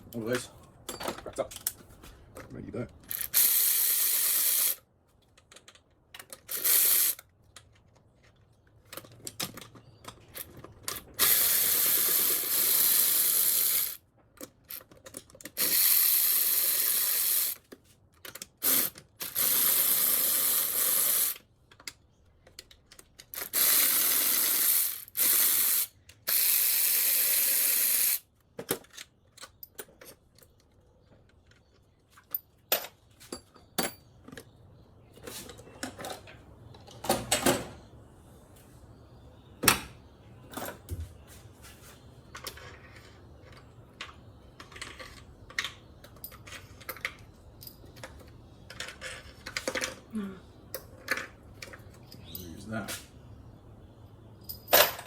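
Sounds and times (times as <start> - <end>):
electric ratchet running: 3.1 - 4.8, 6.5 - 7.2, 11.2 - 14.0, 15.6 - 17.6, 18.6 - 21.4, 23.4 - 28.2.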